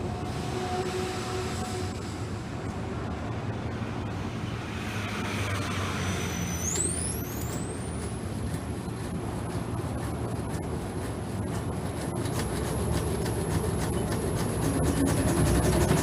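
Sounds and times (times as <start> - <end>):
high whine rising in pitch: 4.1 - 8.2.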